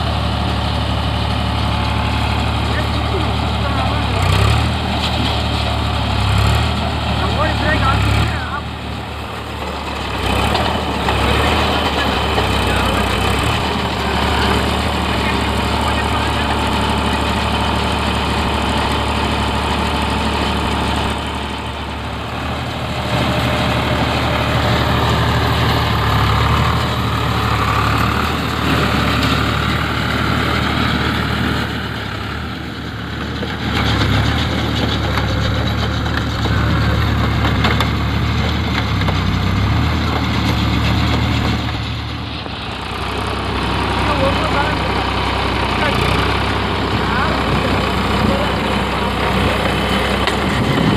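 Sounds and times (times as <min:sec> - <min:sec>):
tractor diesel engine running: 0:00.0 - 0:50.9.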